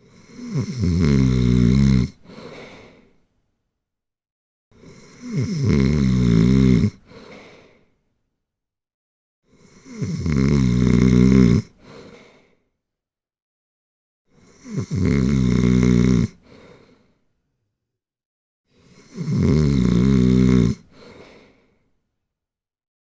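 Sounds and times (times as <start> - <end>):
person snoring: 0.0 - 3.0, 4.8 - 7.3, 9.5 - 11.8, 14.4 - 16.6, 18.8 - 21.3.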